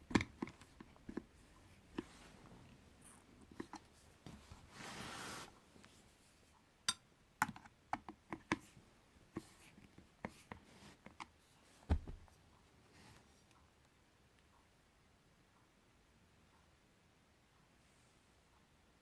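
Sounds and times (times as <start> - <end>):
hands handling speaker parts: 10.3 - 12.4
dull thump: 11.9 - 12.3.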